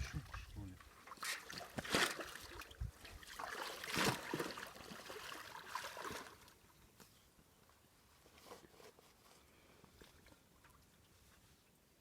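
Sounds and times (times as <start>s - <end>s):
water splashing and trickling: 0.0s - 6.8s.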